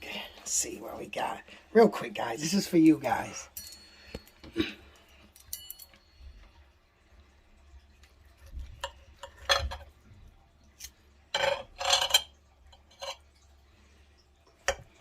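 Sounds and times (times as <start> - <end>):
knife and fork clinking on a plate: 5.4 - 6.1, 11.3 - 13.2.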